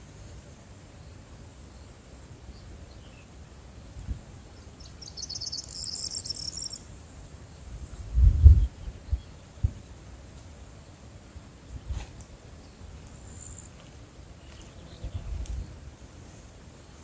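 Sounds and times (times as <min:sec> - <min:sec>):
faint outdoor hiss: 0:00.0 - 0:17.0
insect trilling: 0:04.8 - 0:06.9, 0:13.1 - 0:13.8.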